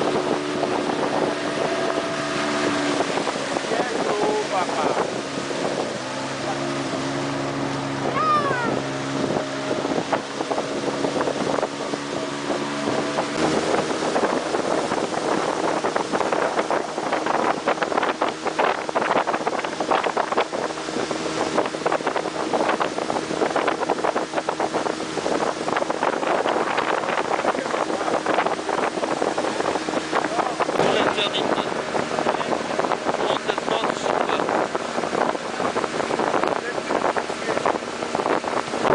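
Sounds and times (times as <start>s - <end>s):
motorboat engine running: 0.0s - 38.9s
water splashing against hull: 0.0s - 38.9s
wind on microphone: 0.0s - 38.9s.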